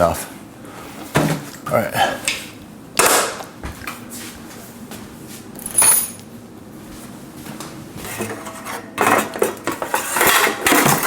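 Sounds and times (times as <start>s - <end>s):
handling noise: 5.6s - 6.3s
metallic clink of hard objects: 5.6s - 6.3s.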